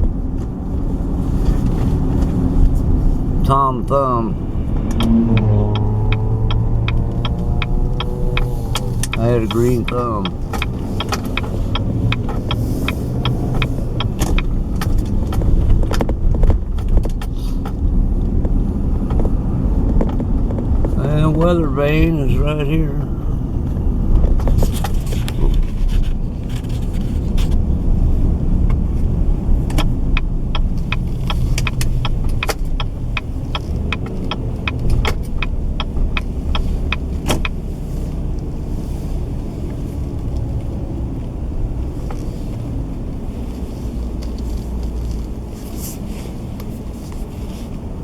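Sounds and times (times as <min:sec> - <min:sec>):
car engine and road rumble: 0:00.0 - 0:48.0
turn signal ticking: 0:00.0 - 0:48.0.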